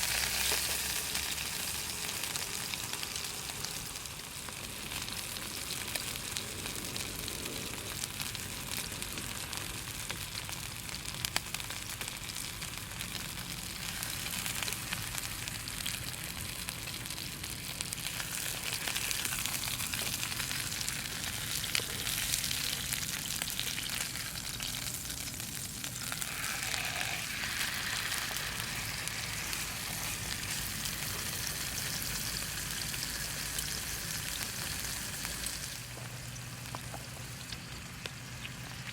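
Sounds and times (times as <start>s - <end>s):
campfire crackling and popping: 0.0s - 38.9s
steak sizzling: 0.0s - 38.9s.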